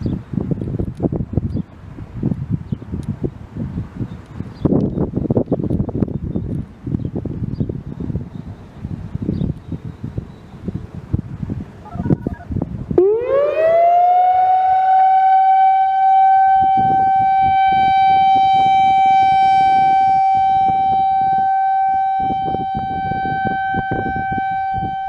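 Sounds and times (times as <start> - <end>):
outdoor warning siren: 13.0 - 25.0.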